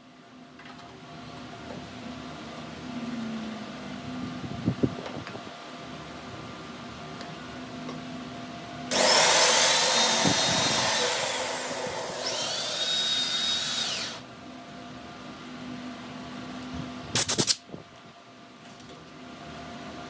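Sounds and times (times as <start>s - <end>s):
low machine hum: 7.6s - 17.0s
electric power tool whine: 8.9s - 14.2s.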